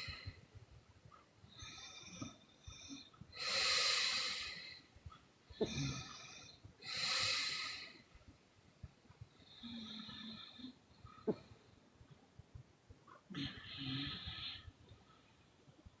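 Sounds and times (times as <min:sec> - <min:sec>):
woman breathing heavily: 0:01.5 - 0:08.2.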